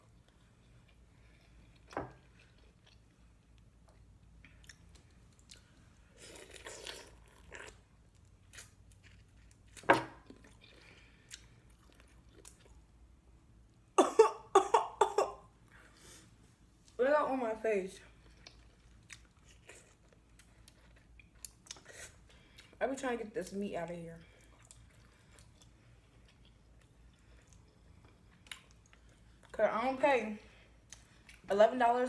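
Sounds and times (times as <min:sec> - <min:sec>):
chewing and mouth clicks: 0:00.1 - 0:12.8, 0:18.2 - 0:22.8, 0:24.3 - 0:29.6
loud coughs: 0:14.0 - 0:15.4.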